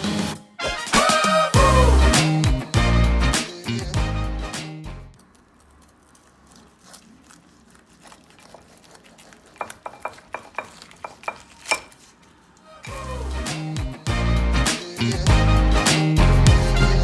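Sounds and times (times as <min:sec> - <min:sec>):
utensils clinking on dishes: 0:09.5 - 0:13.0.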